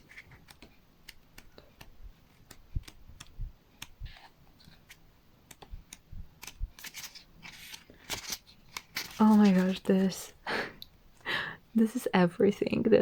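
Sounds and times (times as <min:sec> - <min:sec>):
flipbook pages clicking: 0:00.1 - 0:09.8
soft paper rustles: 0:06.4 - 0:10.3.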